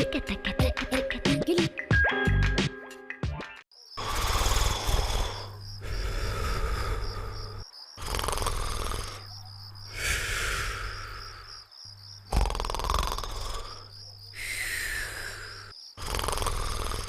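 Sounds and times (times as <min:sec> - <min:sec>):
cartoon snoring: 0:04.0 - 0:11.6, 0:12.2 - 0:17.0.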